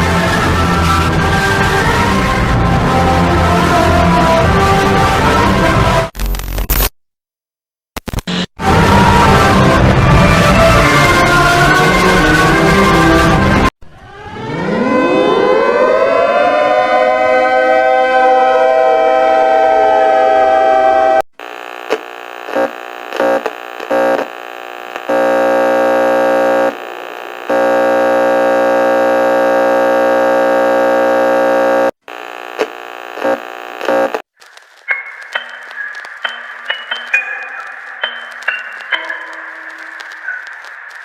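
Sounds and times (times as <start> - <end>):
siren winding up to a wail: 13.8 - 21.2
multi-pitch alarm tone: 13.9 - 21.2.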